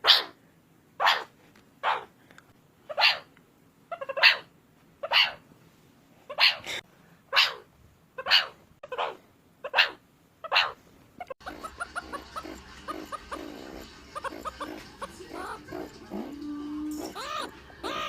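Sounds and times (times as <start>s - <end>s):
meerkat barking calls: 0.0s - 0.4s, 1.0s - 2.1s, 2.9s - 3.3s, 3.9s - 5.4s, 6.3s - 18.0s
background hum: 0.0s - 18.0s
meerkat chirps: 2.9s - 3.3s, 3.9s - 5.4s, 6.3s - 18.0s.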